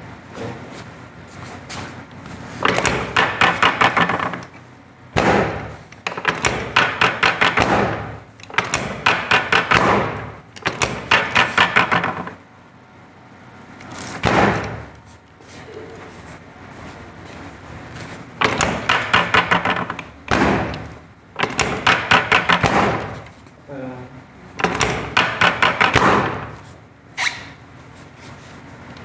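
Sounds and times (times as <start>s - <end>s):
heavy clunks: 2.5s - 4.6s, 5.2s - 12.4s, 14.2s - 15.0s, 18.4s - 23.4s, 24.6s - 26.7s
drop table knocking: 2.6s - 4.5s, 5.2s - 12.4s, 18.4s - 23.2s, 24.6s - 26.6s.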